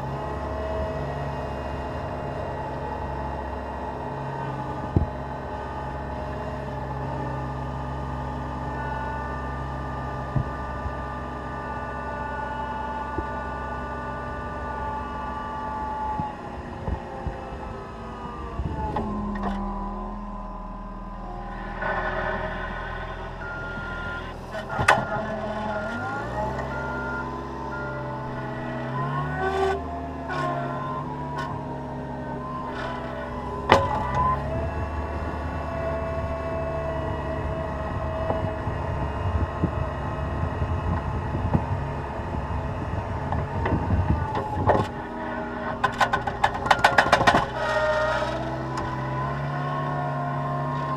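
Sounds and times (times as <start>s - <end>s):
diesel engine running: 0.0s - 50.9s
backup alarm beeping: 18.4s - 29.3s
sharp knocks and clunks: 45.8s - 47.6s.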